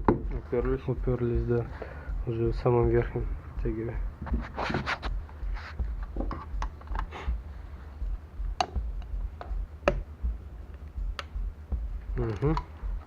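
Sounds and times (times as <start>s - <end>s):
steady low hum: 0.0s - 13.0s
metallic taps of tools: 8.6s - 10.1s.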